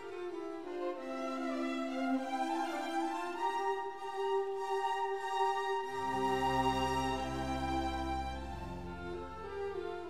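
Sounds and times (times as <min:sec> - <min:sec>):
slow string-like melody: 0:00.0 - 0:10.0.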